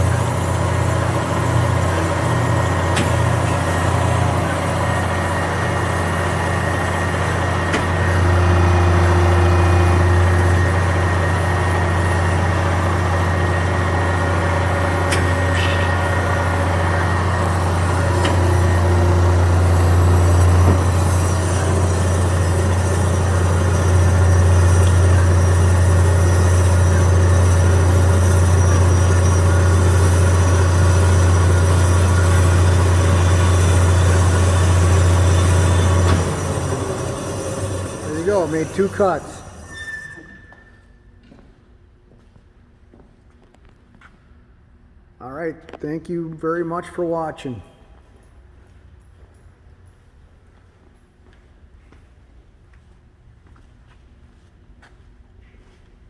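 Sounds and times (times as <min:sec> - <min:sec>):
bandsaw machine hum: 0:00.0 - 0:40.3.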